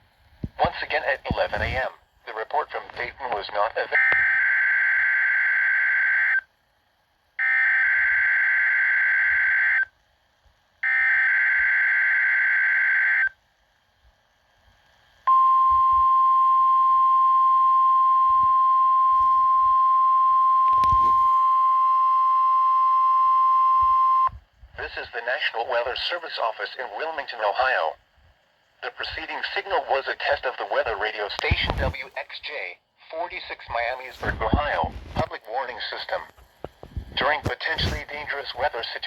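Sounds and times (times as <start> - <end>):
radio hiss: 0.4 - 4.3, 24.7 - 28.1, 28.7 - 39.0
steady single-pitch alarm tone: 4.0 - 6.5, 7.4 - 10.0, 10.8 - 13.4, 15.3 - 24.4.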